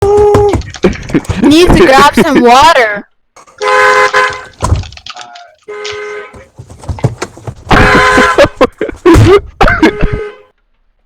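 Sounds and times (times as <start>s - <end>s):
car alarm horn blasts: 3.5s - 4.6s, 5.6s - 6.6s, 7.7s - 8.6s, 9.8s - 10.5s.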